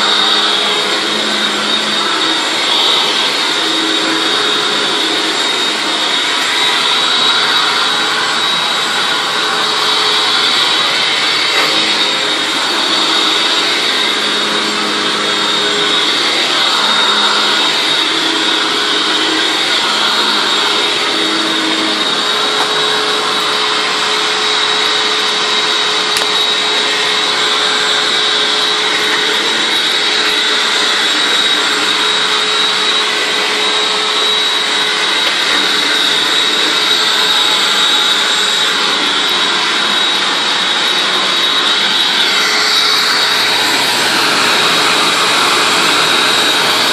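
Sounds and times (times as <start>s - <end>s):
upright vacuum cleaner running: 0.0s - 46.9s.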